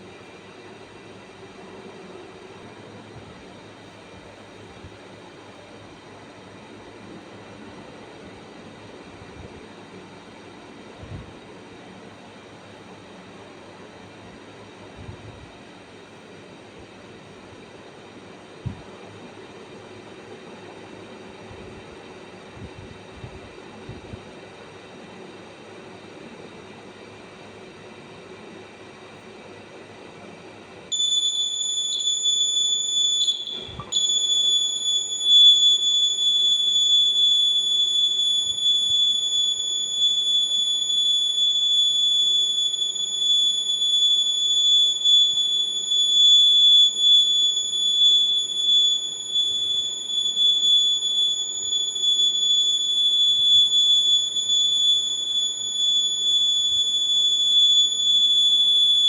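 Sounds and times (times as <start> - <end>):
high-pitched electronic buzzer: 31.0 - 59.0.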